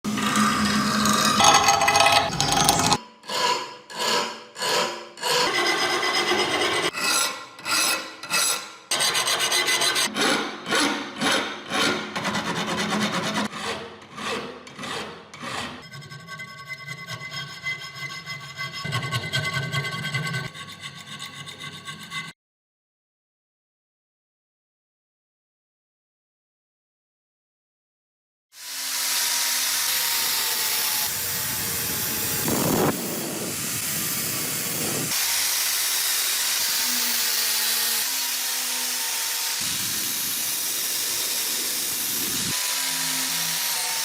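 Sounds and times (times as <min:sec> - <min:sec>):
rasping scraping on rusty blade: 0:00.1 - 0:22.4.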